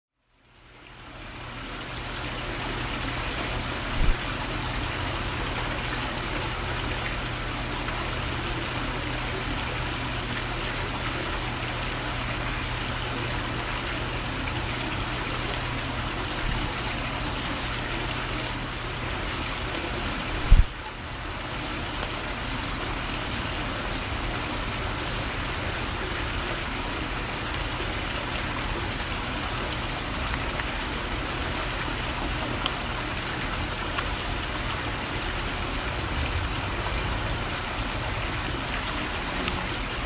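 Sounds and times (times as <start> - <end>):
low hum: 34.7 - 40.0
steady rushing noise: 35.5 - 39.7.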